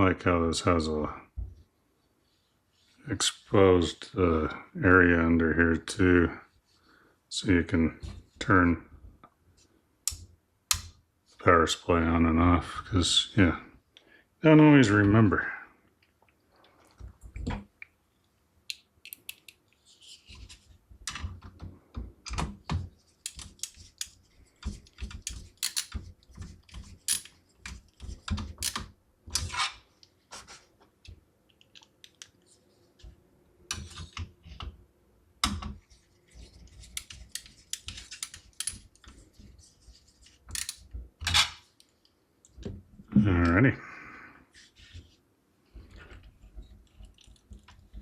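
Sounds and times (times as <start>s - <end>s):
cables rustling: 35.4s - 42.7s.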